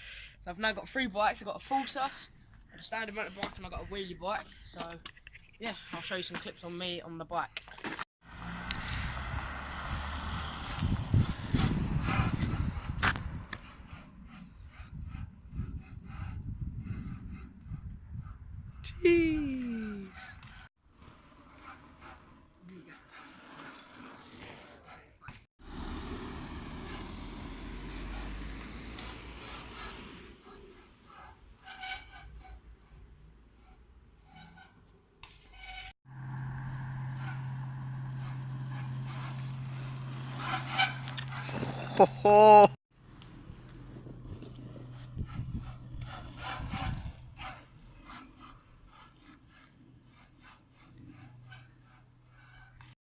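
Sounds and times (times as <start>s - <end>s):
bike tyre noise: 8.2s - 14.8s, 34.3s - 52.9s
wind on microphone: 8.8s - 20.6s, 43.4s - 47.5s
rasping and scraping strokes: 20.2s - 25.4s, 26.7s - 42.1s, 44.0s - 53.0s.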